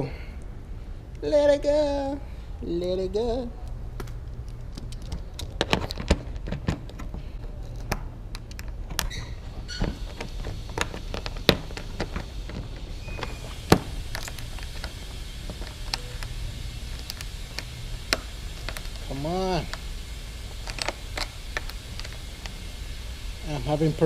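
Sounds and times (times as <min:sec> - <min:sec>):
steady low hum: 0:00.0 - 0:24.0
hand tools clicking and knocking: 0:09.8 - 0:16.3.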